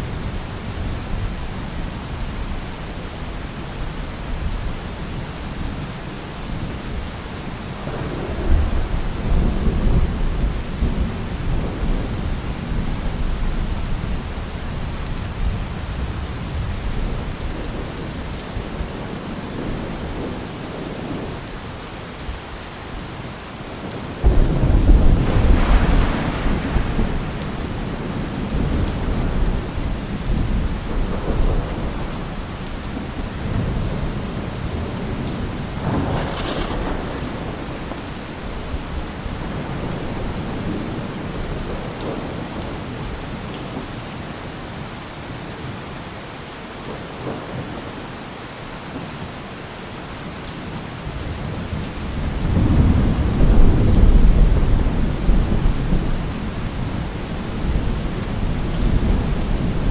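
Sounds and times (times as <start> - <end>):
steady rain: 0.0 - 59.9
thunder crack: 24.2 - 29.4, 35.8 - 38.2
rolling thunder: 24.2 - 42.5, 51.6 - 59.9.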